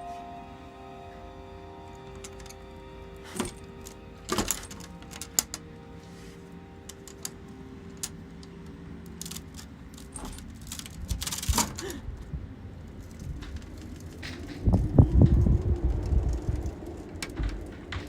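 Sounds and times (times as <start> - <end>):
faint steady hum: 0.0 - 18.0
metal chains and padlock jangling: 3.2 - 5.6, 9.2 - 11.9.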